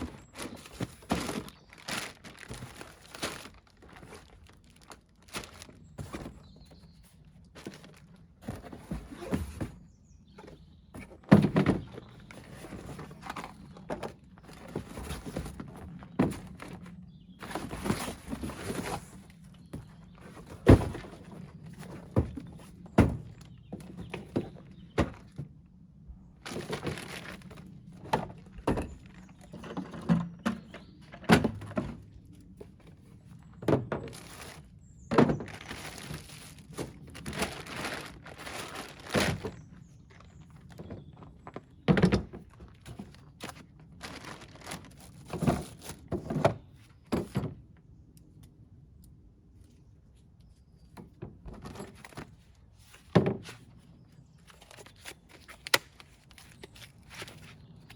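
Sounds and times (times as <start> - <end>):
boxes thumping and knocking: 0.0 - 4.2, 7.6 - 25.6
packaging rustling: 0.0 - 6.3, 26.4 - 27.7, 35.4 - 39.6, 44.0 - 45.2.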